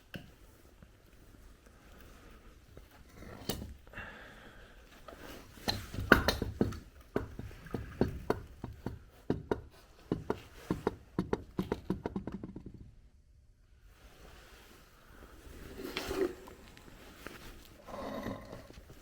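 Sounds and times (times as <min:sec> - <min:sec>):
hand tools knocking on metal: 0:05.7 - 0:12.8.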